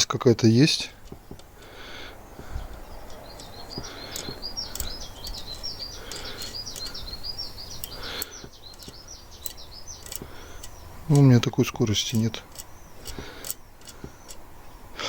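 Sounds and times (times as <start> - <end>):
small bird chirping: 0.8 - 15.0
faint clicks: 2.4 - 14.4.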